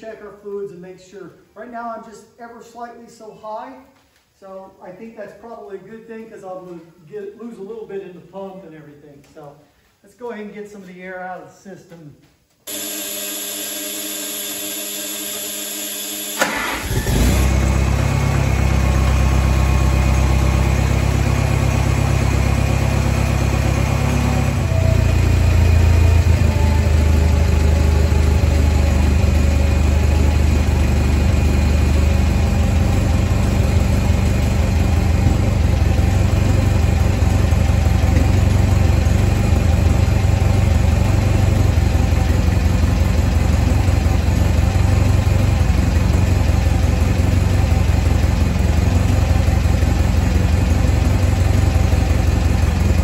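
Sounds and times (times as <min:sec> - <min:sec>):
tractor engine starter cranking: 0:12.7 - 0:19.5
tractor engine running: 0:12.7 - 0:53.0.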